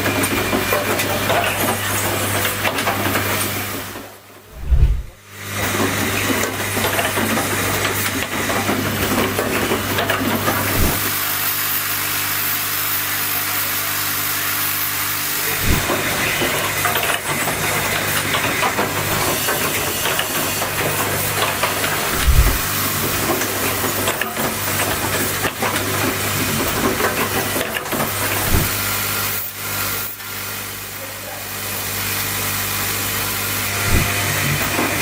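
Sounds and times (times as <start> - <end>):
machine thump: 4.5 - 5.2, 10.7 - 11.1, 15.6 - 15.9, 22.1 - 22.7, 28.4 - 28.8, 33.9 - 34.2
air hiss: 10.7 - 11.2, 22.1 - 22.7, 28.4 - 28.9.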